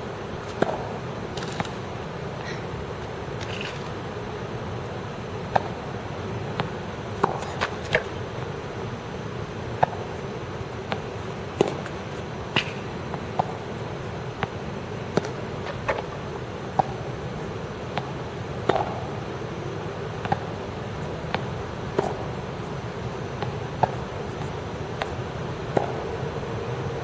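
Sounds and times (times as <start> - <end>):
background hum: 0.0 - 27.0
tennis balls bouncing on court: 0.4 - 1.8, 5.5 - 5.8, 6.5 - 8.5, 9.8 - 10.1, 10.8 - 13.7, 14.4 - 17.1, 17.8 - 19.2, 20.2 - 20.6, 21.2 - 22.4, 23.3 - 26.3
tennis balls struck by rackets: 0.4 - 1.8, 5.5 - 5.8, 6.5 - 8.1, 9.8 - 10.1, 10.8 - 13.6, 14.4 - 17.0, 17.9 - 19.1, 20.2 - 20.5, 21.2 - 22.3, 23.3 - 26.2.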